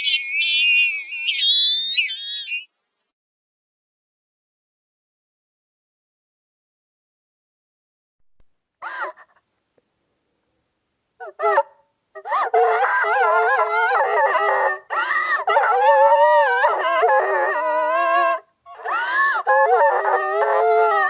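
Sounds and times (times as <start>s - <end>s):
cartoon girl crying: 0.0s - 2.6s.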